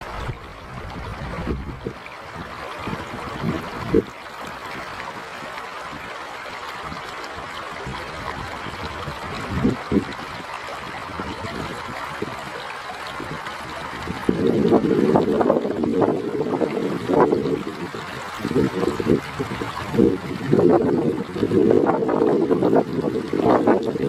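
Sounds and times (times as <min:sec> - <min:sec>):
river water flowing: 0:00.0 - 0:24.0.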